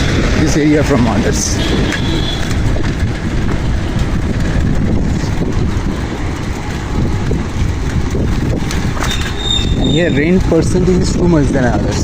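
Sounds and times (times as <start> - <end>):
bicycle road noise: 0.0 - 12.0
wind buffeting microphone: 0.0 - 12.0.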